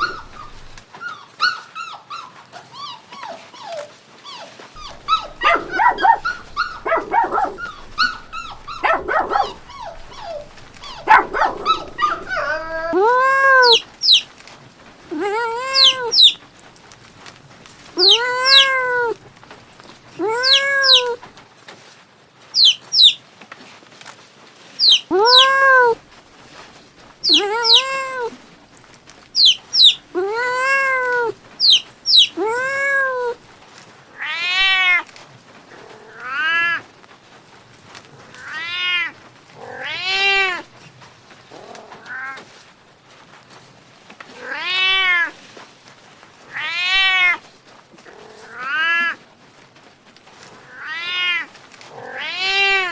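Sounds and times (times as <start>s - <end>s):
cats meowing: 0.0s - 0.8s, 4.8s - 14.3s, 15.0s - 16.6s, 17.8s - 21.3s, 22.6s - 23.2s, 24.8s - 28.6s, 29.2s - 33.5s, 34.2s - 35.0s, 38.4s - 40.7s, 44.3s - 45.4s, 46.5s - 47.5s, 50.6s - 52.9s.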